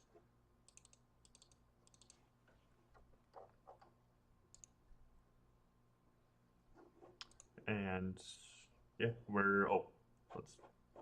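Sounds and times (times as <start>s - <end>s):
mouse and keyboard clicks: 0.7s - 2.2s, 2.9s - 4.8s, 7.0s - 7.6s.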